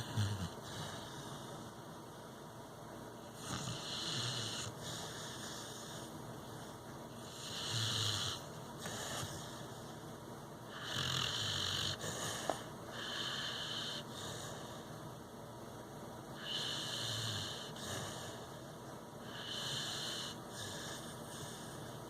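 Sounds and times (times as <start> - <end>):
person snoring: 0.0 - 1.1.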